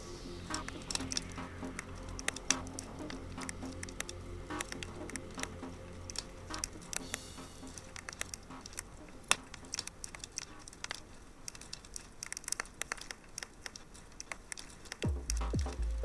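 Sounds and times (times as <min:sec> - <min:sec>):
bass-heavy music beat: 0:00.0 - 0:09.4, 0:15.1 - 0:16.0
fire crackling: 0:00.0 - 0:16.0.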